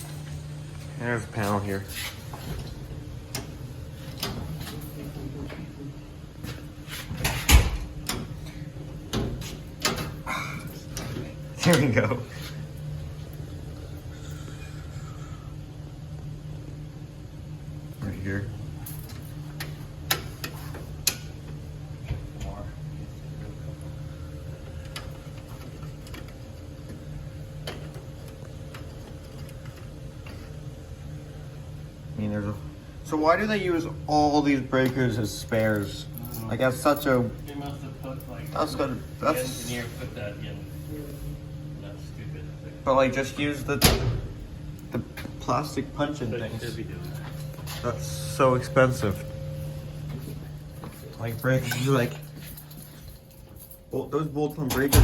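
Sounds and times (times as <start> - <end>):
steady low hum: 0.0 - 55.0
low hum: 46.3 - 55.0.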